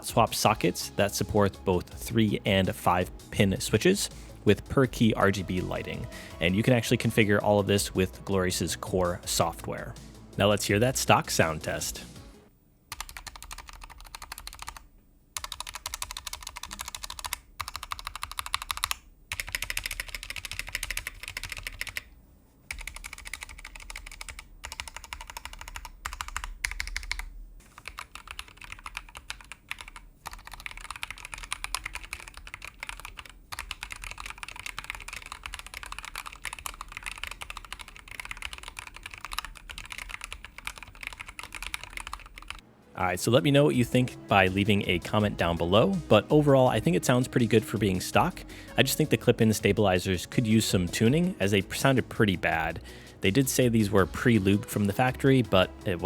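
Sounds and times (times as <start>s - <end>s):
typing on mechanical keyboard: 12.9s - 14.8s, 15.4s - 22.1s, 22.7s - 42.6s.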